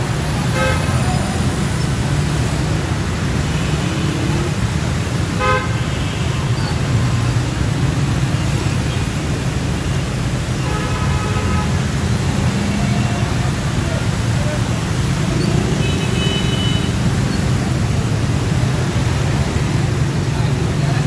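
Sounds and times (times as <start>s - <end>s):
road traffic rumble: 0.0s - 21.0s
vehicle horn toot: 5.4s - 6.4s.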